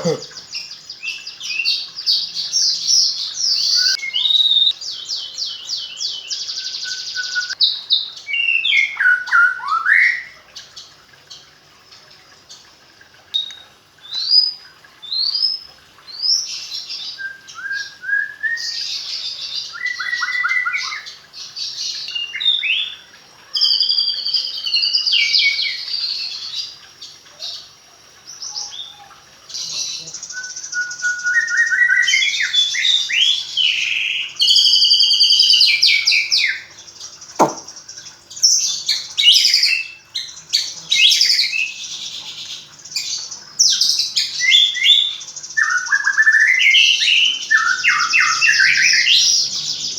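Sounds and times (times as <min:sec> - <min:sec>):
songbird singing varied song: 0:00.0 - 0:10.7, 0:28.4 - 0:49.9.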